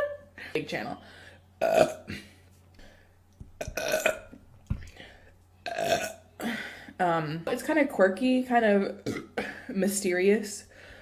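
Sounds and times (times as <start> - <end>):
woman burping loudly: 1.6 - 2.3, 3.6 - 4.4, 5.6 - 6.6, 9.0 - 9.7.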